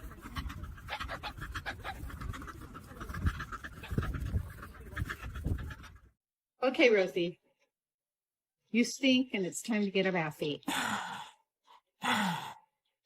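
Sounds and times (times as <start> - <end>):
dog panting: 0.0 - 6.2.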